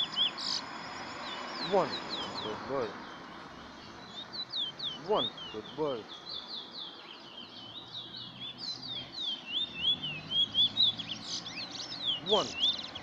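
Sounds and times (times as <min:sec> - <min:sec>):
finch singing chirps: 0:00.0 - 0:13.0.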